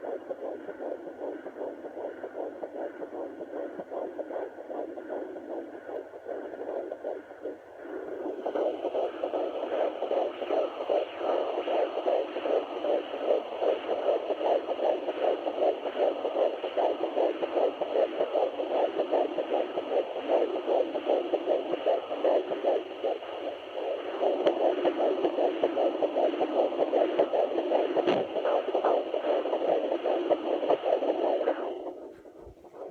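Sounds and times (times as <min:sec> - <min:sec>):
fetal heartbeat whooshing pulse: 0:00.0 - 0:32.9.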